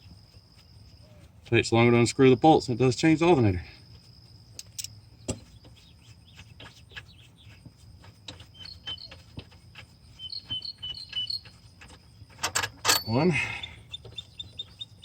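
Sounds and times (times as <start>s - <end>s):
bird chirps: 3.9s - 12.4s, 13.2s - 15.0s.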